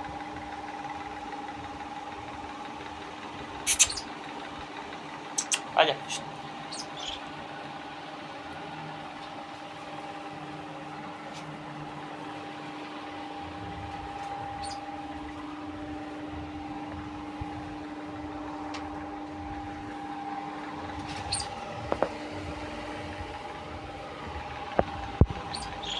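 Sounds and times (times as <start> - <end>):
motor humming: 0.0 - 25.9
short high squeaks: 3.6 - 4.1, 5.4 - 5.8, 6.7 - 7.2, 14.6 - 14.8, 21.1 - 21.6, 25.4 - 25.9.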